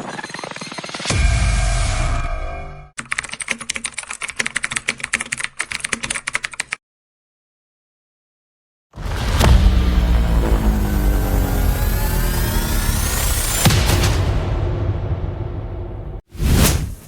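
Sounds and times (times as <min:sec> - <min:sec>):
computer keyboard typing: 0:03.0 - 0:06.8
deep musical sting: 0:09.0 - 0:16.2.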